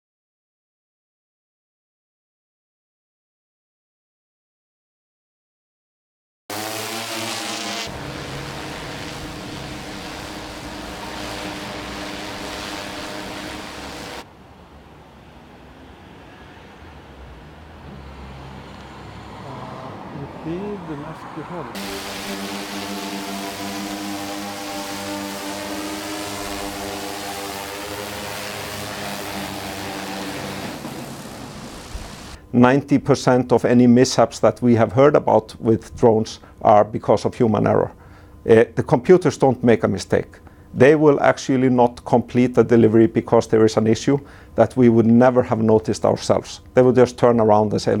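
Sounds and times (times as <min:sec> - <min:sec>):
drone propellers humming: 0:06.5 - 0:14.2, 0:21.8 - 0:32.4
buzzing tone: 0:06.5 - 0:14.3, 0:21.8 - 0:32.4.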